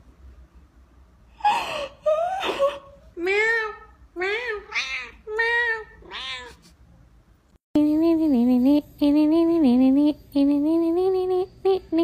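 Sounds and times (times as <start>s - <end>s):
person humming slow tune: 7.8s - 12.0s.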